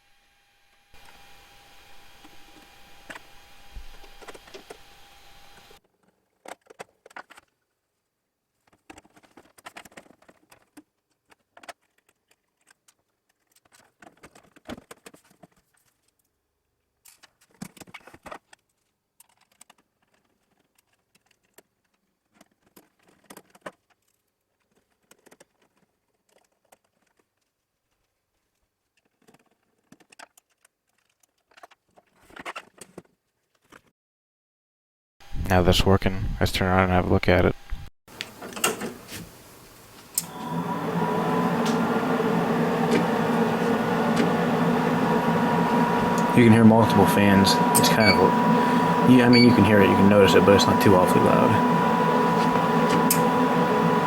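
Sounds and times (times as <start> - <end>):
steady hum: 38.1 - 54.0.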